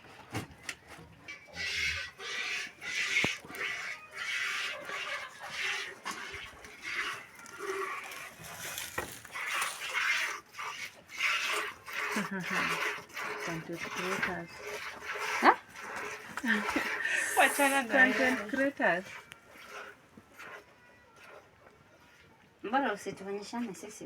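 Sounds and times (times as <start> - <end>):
milk squirting into a container: 2.2 - 21.4.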